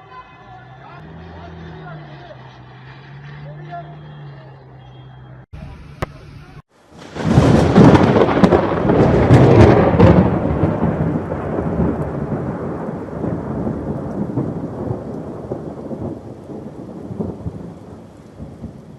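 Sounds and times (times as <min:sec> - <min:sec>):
thunder rumbling: 0:05.6 - 0:18.9
steady rain: 0:06.6 - 0:18.9.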